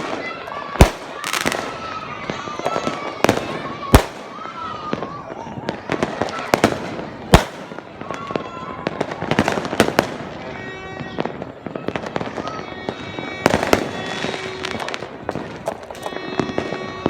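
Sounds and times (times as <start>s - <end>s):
firecracker pops crackling: 0.0s - 17.0s
fireworks bangs: 0.0s - 17.0s.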